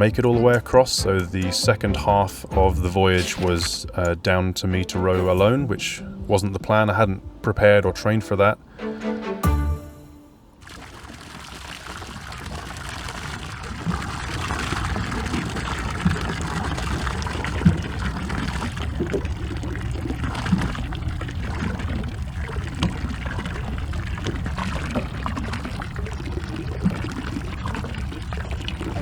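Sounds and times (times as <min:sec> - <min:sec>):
sea water sloshing against boat: 0:10.6 - 0:29.0.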